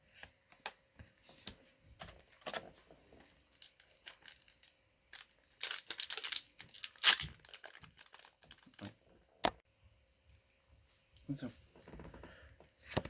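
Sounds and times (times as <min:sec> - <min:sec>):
foil wrappers crinkling and tearing: 0:03.5 - 0:08.9.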